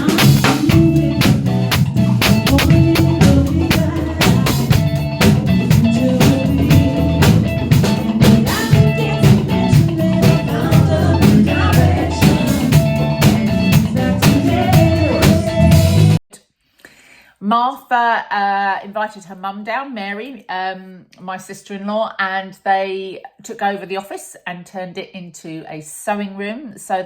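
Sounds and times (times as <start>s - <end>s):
bass line: 0.0s - 16.2s
drum kit beat: 0.0s - 16.2s
live band playing funk: 0.0s - 16.2s.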